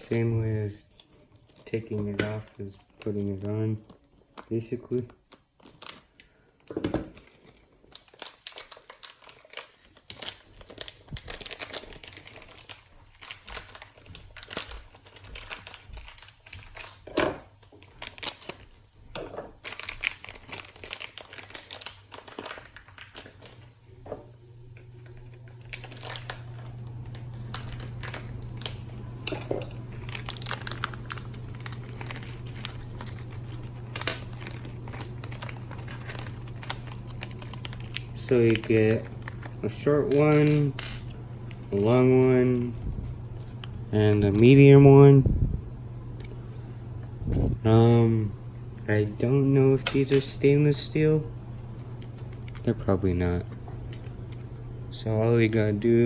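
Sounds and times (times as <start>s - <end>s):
steady low hum: 0.0s - 56.0s
small parts clicking and tapping: 0.9s - 24.2s
plastic packaging crinkling: 7.3s - 23.7s, 25.0s - 44.8s.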